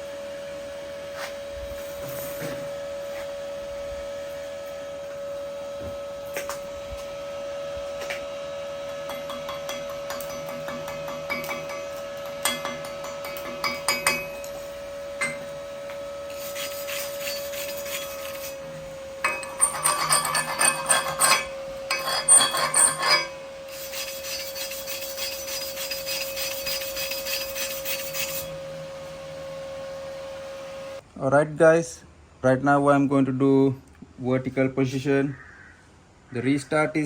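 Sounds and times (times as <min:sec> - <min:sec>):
steady hum: 0:00.0 - 0:31.2
wire brush scraping metal: 0:16.3 - 0:28.6.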